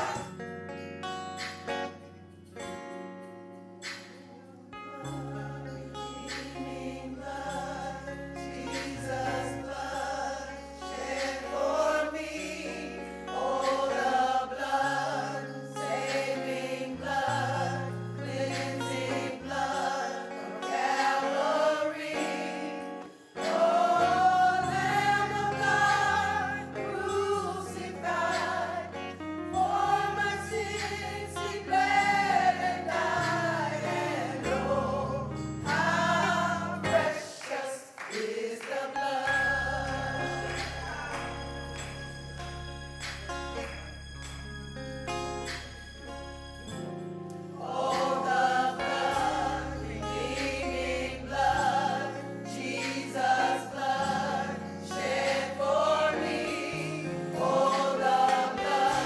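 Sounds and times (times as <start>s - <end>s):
choir singing gospel: 0.0s - 44.8s, 46.5s - 59.0s
instrumental accompaniment: 39.0s - 59.0s.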